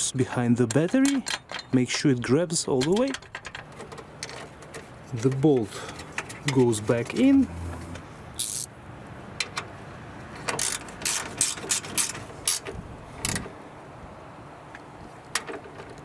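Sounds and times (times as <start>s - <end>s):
ratchet wrench clicking: 8.4s - 8.7s, 10.6s - 12.7s.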